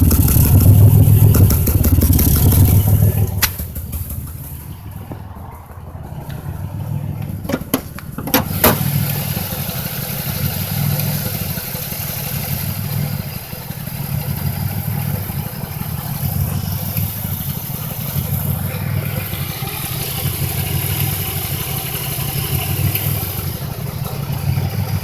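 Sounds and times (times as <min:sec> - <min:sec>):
car engine idling unevenly: 0:00.0 - 0:25.0.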